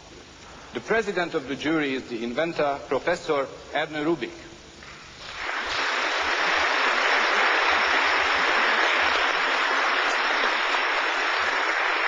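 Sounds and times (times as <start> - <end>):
audience applauding: 5.2 - 12.0.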